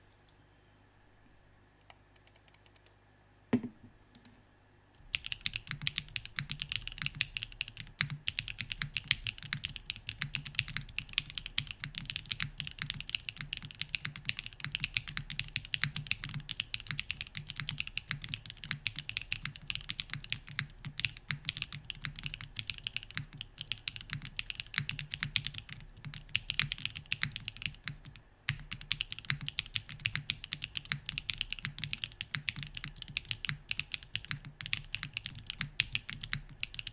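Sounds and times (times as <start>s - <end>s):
single knock: 3.6s - 3.9s
fast mechanical keyboard typing: 5.1s - 36.9s.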